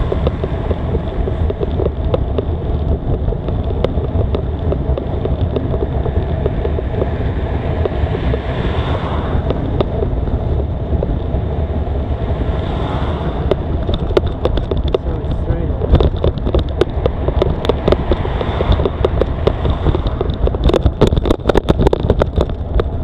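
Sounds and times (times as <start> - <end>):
small clicks: 0.0 - 7.2
wind rumbling on microphone: 0.0 - 23.0.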